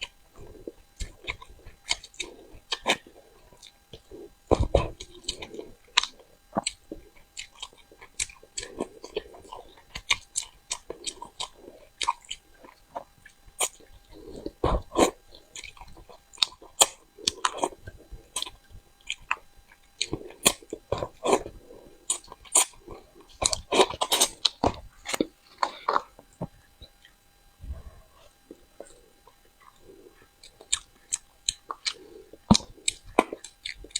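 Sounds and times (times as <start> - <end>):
wet chewing and crunching: 0.0 - 33.9.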